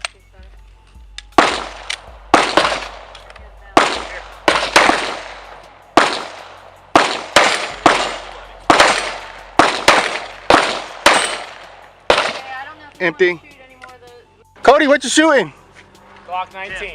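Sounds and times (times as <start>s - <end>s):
pistol shots with short echo: 1.2s - 12.5s.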